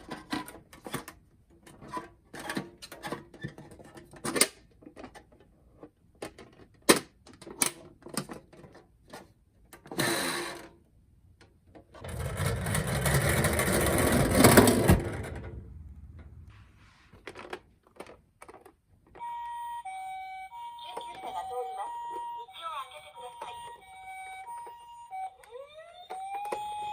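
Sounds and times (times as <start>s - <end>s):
toy car rolling down slope: 9.9s - 10.7s, 12.0s - 15.6s
plastic toy cars clicking: 11.4s - 15.5s, 17.2s - 19.2s.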